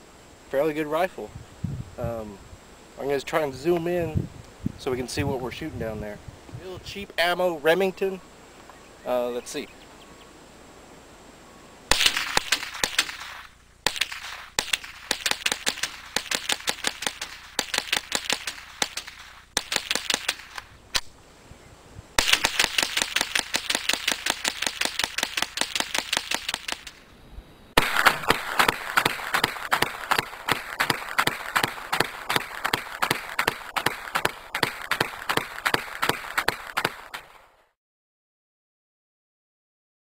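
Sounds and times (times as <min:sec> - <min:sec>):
rifle firing rapidly: 0:13.9 - 0:20.5, 0:22.2 - 0:26.8, 0:27.8 - 0:36.9.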